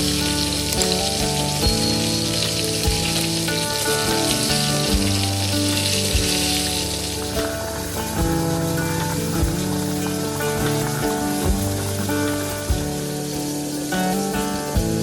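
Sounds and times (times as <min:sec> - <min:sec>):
instrumental music with steady beat: 0:00.0 - 0:15.0
steady hiss: 0:00.0 - 0:15.0.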